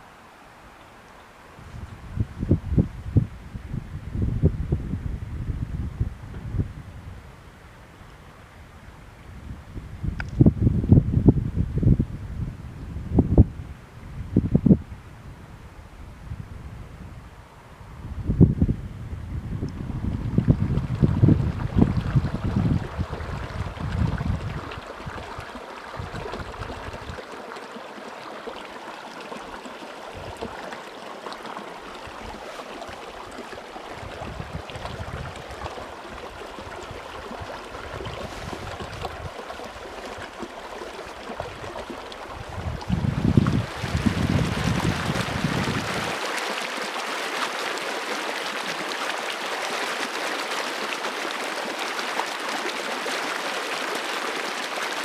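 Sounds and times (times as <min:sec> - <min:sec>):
stream water rushing: 0:00.0 - 0:01.7, 0:19.8 - 0:55.0
wind buffeting microphone: 0:01.6 - 0:07.6, 0:08.9 - 0:27.2, 0:32.0 - 0:40.4, 0:41.2 - 0:46.3.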